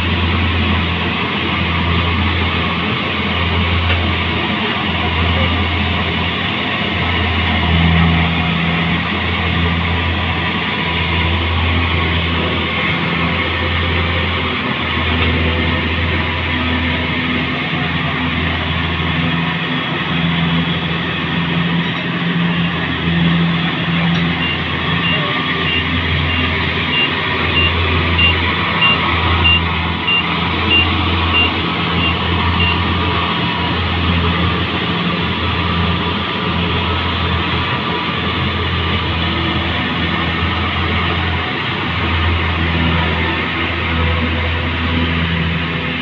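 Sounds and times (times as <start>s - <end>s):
harvester engine humming: 0.0s - 46.0s
reversing alarm beeping: 24.1s - 33.0s.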